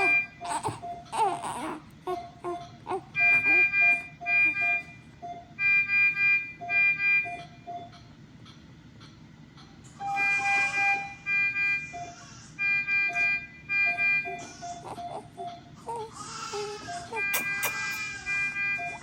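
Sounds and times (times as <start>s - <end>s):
horn honking short toots: 17.2s - 18.9s.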